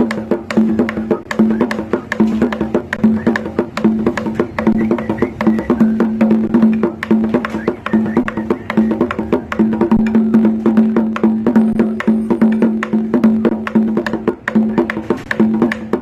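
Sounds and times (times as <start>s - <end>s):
held pitched tone: 11.2s - 13.7s.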